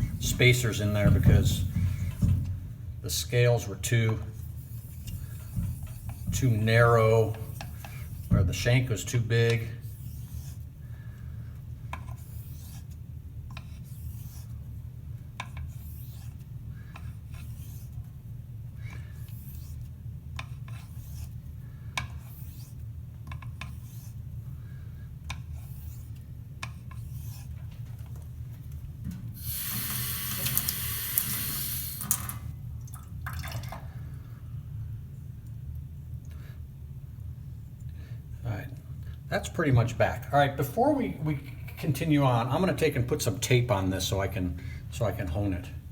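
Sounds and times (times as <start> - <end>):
razor scraping on whetstone: 12.1 - 12.9, 19.3 - 21.3, 23.6 - 24.2, 25.5 - 26.1, 26.7 - 27.6
loud hiss: 29.4 - 32.2.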